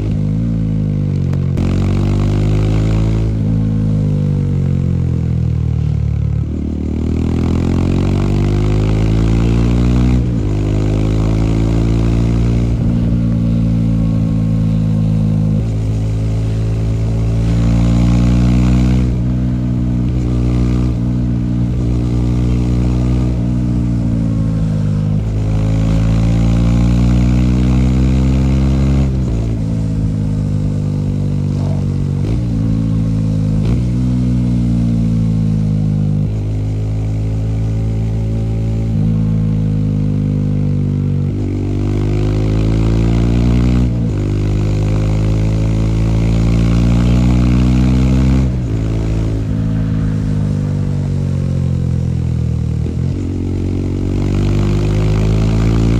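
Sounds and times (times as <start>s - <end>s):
motorcycle engine accelerating: 0.0s - 55.9s.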